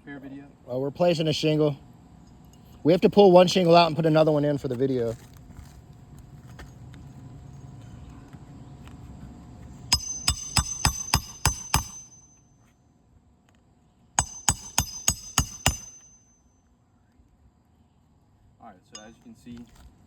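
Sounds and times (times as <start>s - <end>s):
hammer striking roofing nails: 9.9s - 12.3s, 14.2s - 16.2s.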